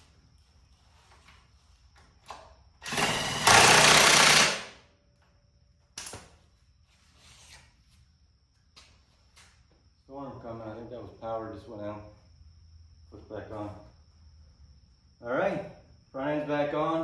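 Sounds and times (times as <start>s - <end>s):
power wrench rattling: 2.8s - 4.8s.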